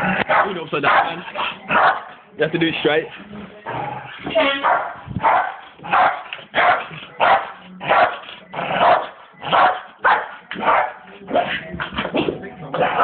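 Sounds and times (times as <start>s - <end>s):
dog barking: 0.3s - 2.1s, 4.6s - 8.2s, 8.8s - 11.0s.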